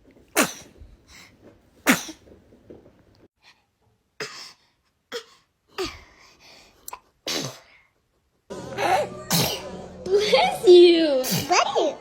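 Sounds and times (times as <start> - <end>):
baby sneezing: 0.4 - 0.7, 1.8 - 2.2.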